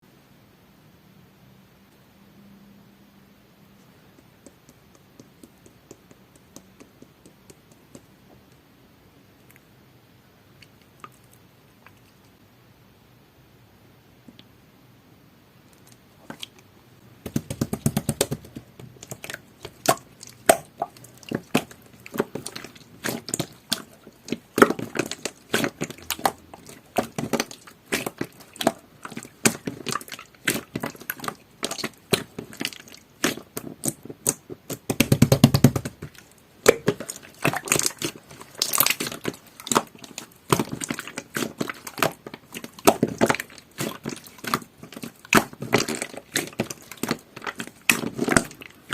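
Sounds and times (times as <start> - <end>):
slime squishing and popping: 17.2 - 48.9.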